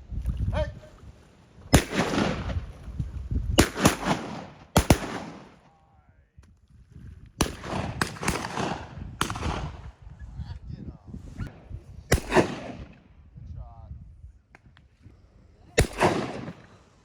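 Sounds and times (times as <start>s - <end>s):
shotgun shots echoing: 1.7s - 2.6s, 3.6s - 5.6s, 7.4s - 9.8s, 12.1s - 13.0s, 15.8s - 16.8s.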